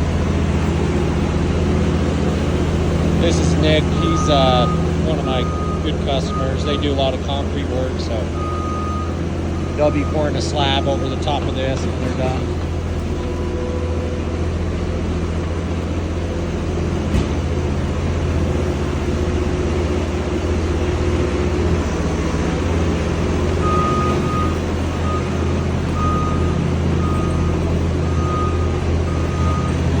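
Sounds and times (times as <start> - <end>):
diesel engine running: 0.0 - 30.0
reversing alarm beeping: 2.5 - 14.1, 18.5 - 30.0.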